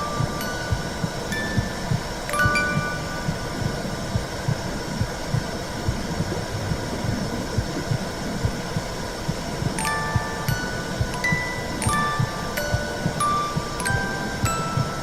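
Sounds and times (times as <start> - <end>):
soft chime: 0.0 - 4.2, 9.8 - 15.0
heartbeat thumps: 0.0 - 15.0.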